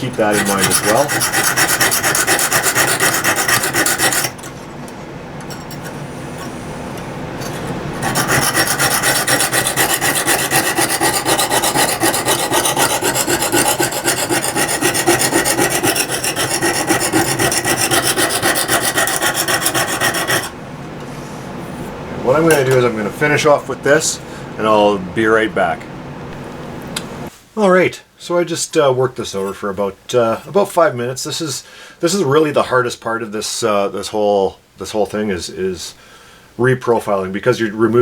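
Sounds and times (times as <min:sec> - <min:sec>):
hone scraping steel: 0:00.0 - 0:04.7, 0:07.4 - 0:20.6.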